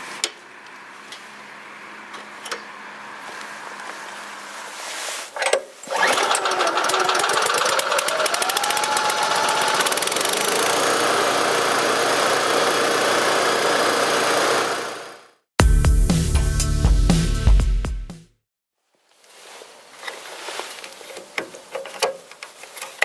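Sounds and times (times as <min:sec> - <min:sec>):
petrol engine starting and running: 0:05.8 - 0:15.4.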